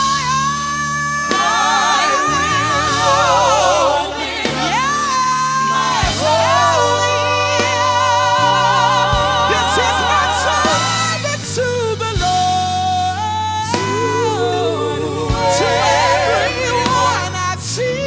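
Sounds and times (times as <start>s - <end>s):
person singing with vibrato: 0.0s - 13.0s
bass and keyboard chords: 0.0s - 18.0s.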